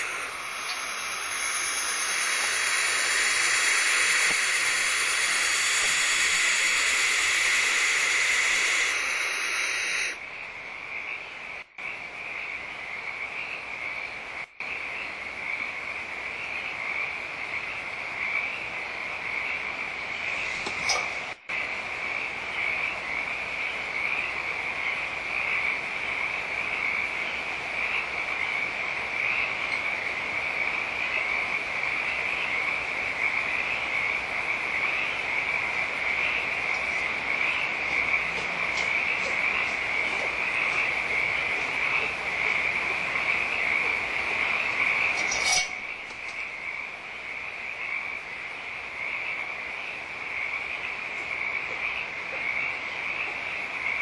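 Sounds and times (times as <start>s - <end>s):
chorus of pulsing animal calls: 0.0s - 10.3s, 24.0s - 54.0s.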